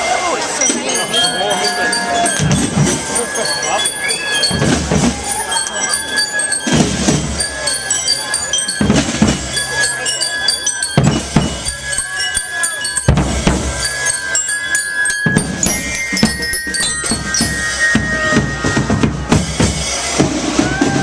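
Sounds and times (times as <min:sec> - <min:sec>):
held high notes: 0:00.0 - 0:21.0
bass and snare drums beating: 0:02.2 - 0:05.8, 0:06.5 - 0:07.9, 0:08.6 - 0:10.0, 0:10.9 - 0:14.2, 0:15.2 - 0:21.0.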